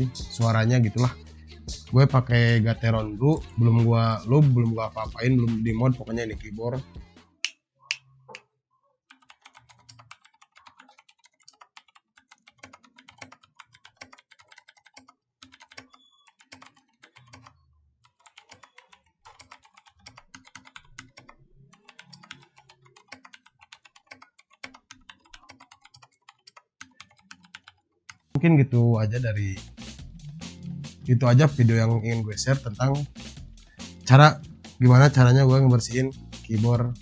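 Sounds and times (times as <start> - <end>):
mechanical keyboard typing: 9.1 - 28.3.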